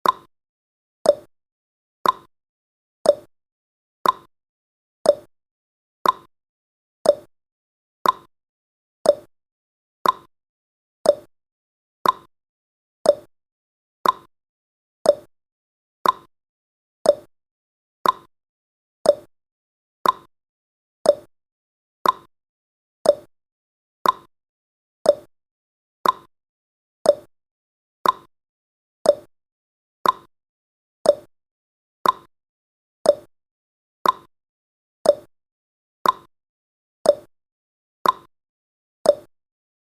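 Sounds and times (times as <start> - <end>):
clock tick-tock: 0.0 - 0.3, 1.0 - 1.3, 2.0 - 2.3, 3.0 - 3.3, 4.0 - 4.3, 5.0 - 5.3, 6.0 - 6.3, 7.0 - 7.3, 8.0 - 8.3, 9.0 - 9.3, 10.0 - 10.3, 11.0 - 11.3, 12.0 - 12.3, 13.0 - 13.3, 14.0 - 14.3, 15.0 - 15.3, 16.0 - 16.3, 17.0 - 17.3, 18.0 - 18.3, 19.0 - 19.3, 20.0 - 20.3, 21.0 - 21.3, 22.0 - 22.3, 23.0 - 23.3, 24.0 - 24.3, 25.0 - 25.3, 26.0 - 26.3, 27.0 - 27.3, 28.0 - 28.3, 29.0 - 29.3, 30.0 - 30.3, 31.0 - 31.3, 32.0 - 32.3, 33.0 - 33.3, 34.0 - 34.3, 35.0 - 35.3, 36.0 - 36.3, 37.0 - 37.3, 38.0 - 38.3, 39.0 - 39.4.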